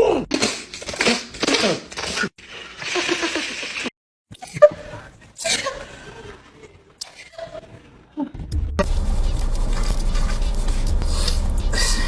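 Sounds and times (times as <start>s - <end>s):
person sneezing: 0.0s - 2.3s, 11.7s - 12.0s.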